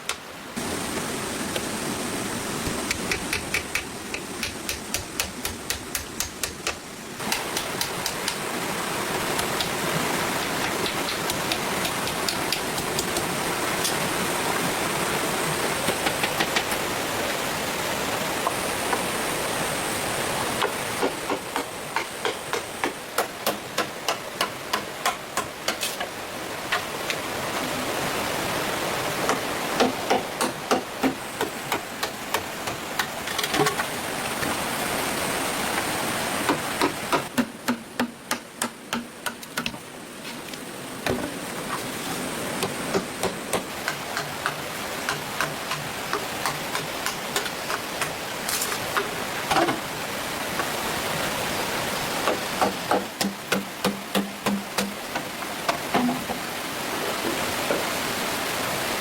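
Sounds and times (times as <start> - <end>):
hand tool knocking wood: 2.7 - 8.4, 20.6 - 26.1, 29.3 - 33.8, 36.4 - 39.8, 41.0 - 41.8, 42.6 - 49.8, 52.2 - 56.4
hand tool scraping wood: 20.6 - 26.1.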